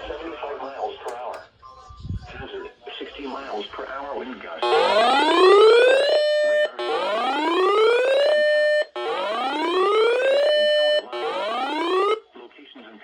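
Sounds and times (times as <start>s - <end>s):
electronic whoop alarm: 4.6s - 12.2s.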